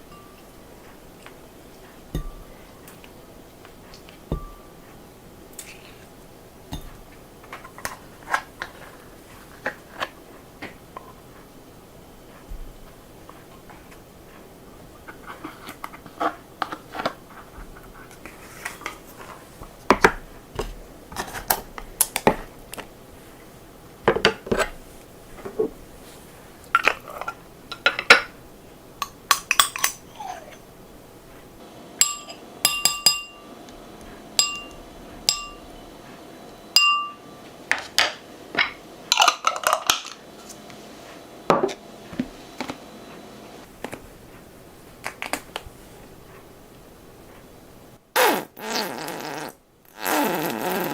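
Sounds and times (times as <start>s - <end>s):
dishes and utensils clinking: 0.0s - 11.6s, 12.2s - 23.4s, 24.1s - 31.4s, 32.0s - 33.6s, 34.4s - 35.8s, 36.7s - 40.2s.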